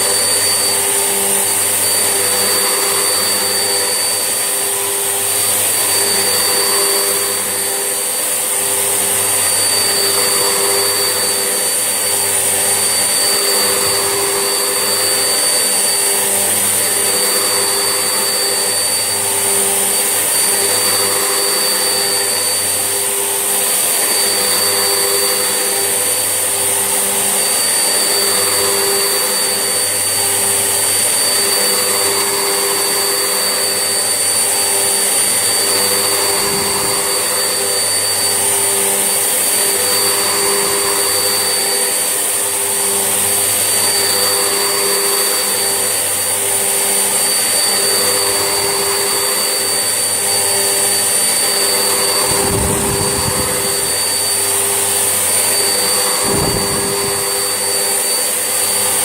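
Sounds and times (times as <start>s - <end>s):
vacuum cleaner running: 0.0s - 59.0s.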